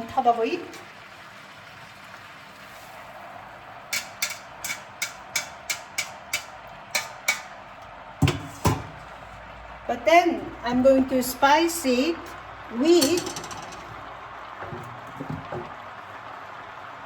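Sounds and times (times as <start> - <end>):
metal utensil clicking and tapping: 3.9 - 7.6, 12.9 - 14.0.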